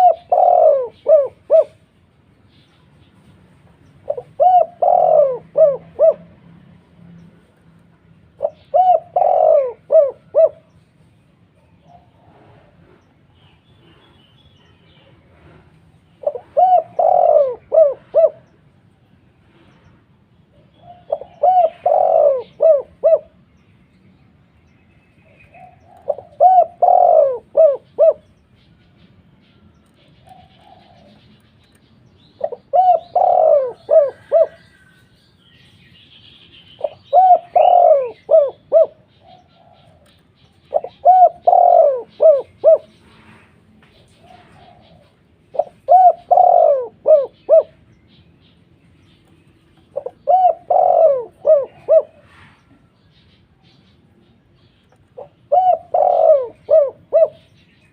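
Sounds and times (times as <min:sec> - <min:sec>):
dove cooing: 0:00.0 - 0:01.9, 0:04.0 - 0:06.4, 0:08.3 - 0:10.8, 0:16.2 - 0:18.7, 0:20.8 - 0:23.4, 0:25.4 - 0:28.5, 0:30.0 - 0:31.8, 0:32.4 - 0:34.9, 0:36.8 - 0:43.4, 0:44.0 - 0:47.9, 0:49.8 - 0:52.5, 0:55.0 - 0:57.6.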